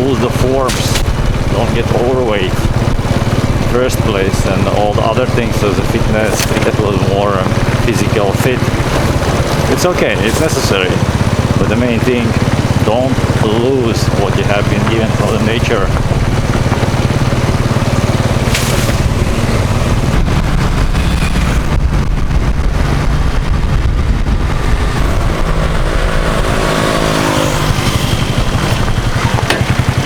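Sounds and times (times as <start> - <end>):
engine running: 0.0 - 30.0
second pitched engine tone: 3.4 - 22.6.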